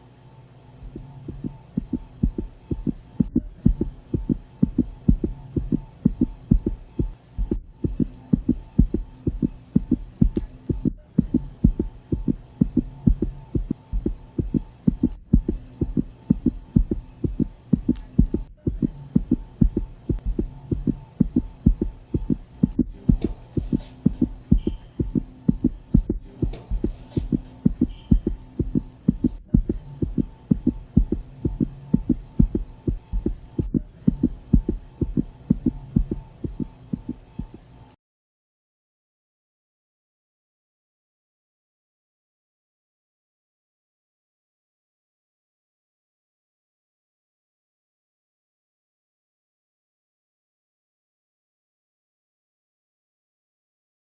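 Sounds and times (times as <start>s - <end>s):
steady hum: 0.0s - 38.0s
fast fetal heartbeat: 0.8s - 37.7s.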